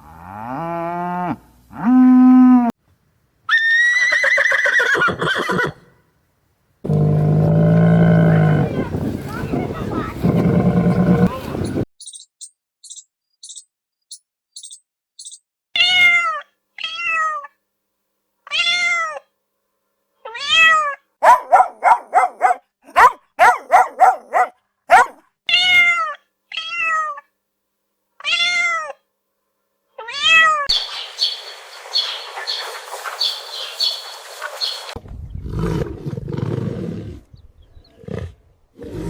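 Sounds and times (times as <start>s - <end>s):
high chirps: 12.0s - 15.4s
cat meowing: 15.8s - 17.5s, 18.5s - 19.3s, 20.3s - 21.0s, 24.9s - 27.3s, 28.2s - 29.0s, 30.0s - 30.7s.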